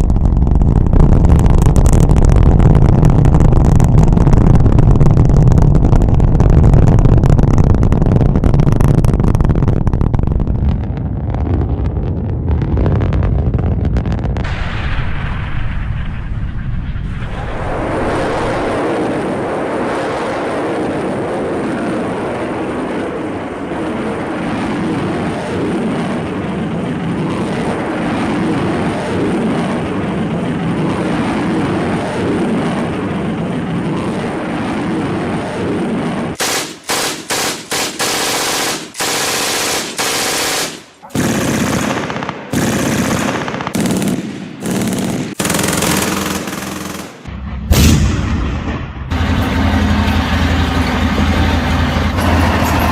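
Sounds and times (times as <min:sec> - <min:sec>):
machine-gun fire bursts: 0:36.4 - 0:47.3
dense din: 0:47.2 - 0:52.9.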